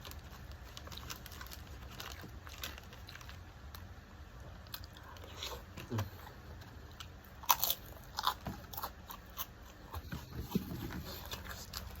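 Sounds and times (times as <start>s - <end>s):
person chewing and biting: 4.7s - 12.0s.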